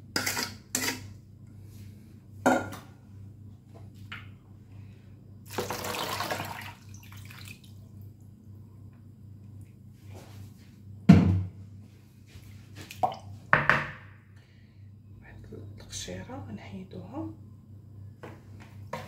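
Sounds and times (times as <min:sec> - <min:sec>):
low steady hum: 0:00.0 - 0:19.0
pouring into bowl: 0:05.5 - 0:07.8.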